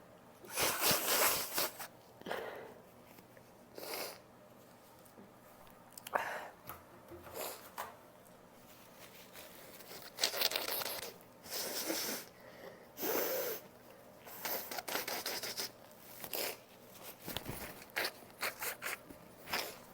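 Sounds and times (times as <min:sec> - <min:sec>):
person sniffing and blowing nose: 0:00.4 - 0:02.6, 0:03.8 - 0:04.2, 0:09.8 - 0:12.3, 0:13.0 - 0:13.7, 0:14.3 - 0:16.6, 0:17.9 - 0:19.8.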